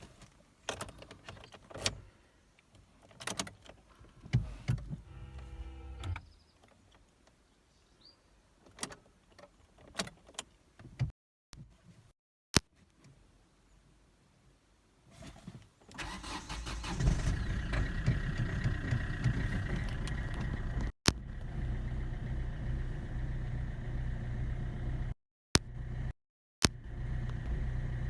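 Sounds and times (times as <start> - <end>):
electric motor whine: 5.0 - 6.2
clicks and knocks in a car: 17.7 - 20.9.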